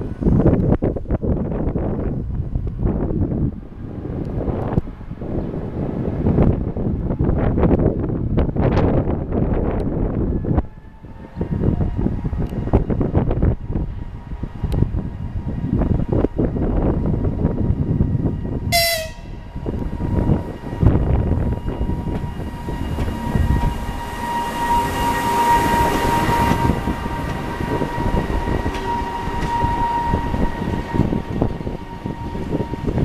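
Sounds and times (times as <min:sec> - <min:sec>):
train rumbling: 0:00.0 - 0:33.0
high whine: 0:08.7 - 0:33.0
high train horn blast: 0:18.6 - 0:33.0.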